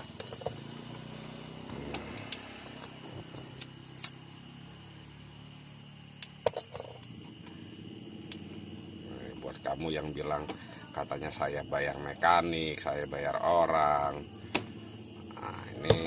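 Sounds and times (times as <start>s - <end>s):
steady low hum: 1.3s - 16.0s
hand tools clicking and snipping: 1.9s - 4.2s.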